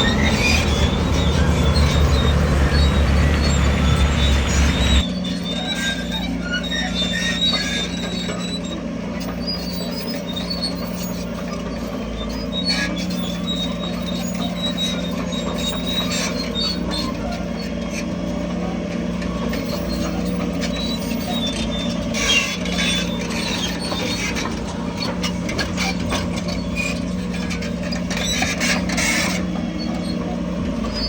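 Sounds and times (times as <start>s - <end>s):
diesel engine running: 0.0s - 5.1s, 13.2s - 31.0s
faint high-pitched squeaks: 0.0s - 8.7s, 19.4s - 31.0s.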